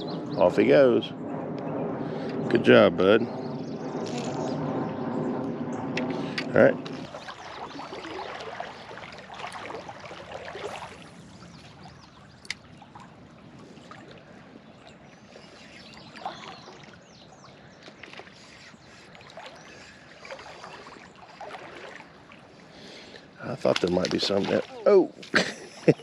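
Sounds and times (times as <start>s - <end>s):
creek water trickling: 6.0s - 26.0s.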